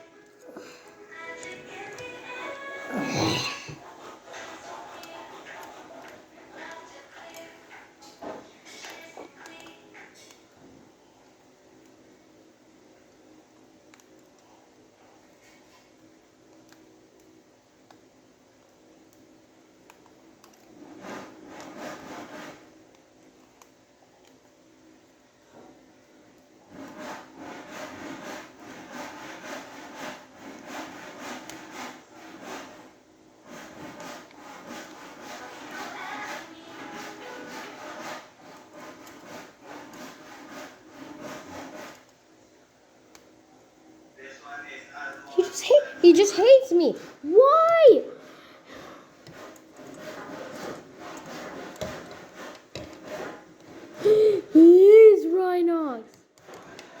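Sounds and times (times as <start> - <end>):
rubbing and scraping plastic parts: 3.7 - 10.8, 19.9 - 24.5, 25.5 - 42.3, 45.4 - 54.8, 55.4 - 57.0.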